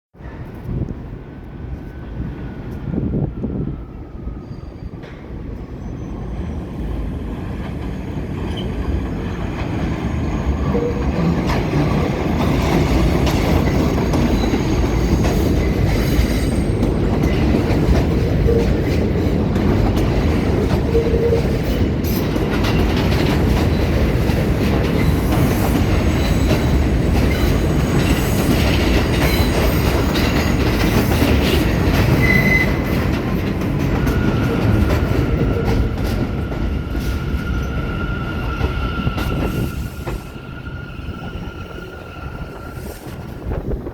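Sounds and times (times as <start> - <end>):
subway train on rails: 0.1 - 43.9
high wheel squeal: 4.3 - 6.9, 32.1 - 33.0, 34.0 - 43.5.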